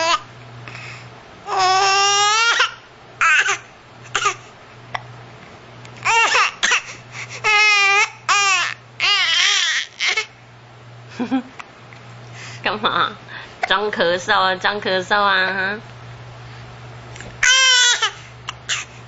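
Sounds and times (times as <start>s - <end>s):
baby crying: 1.5s - 4.4s, 6.0s - 10.3s, 17.4s - 18.9s.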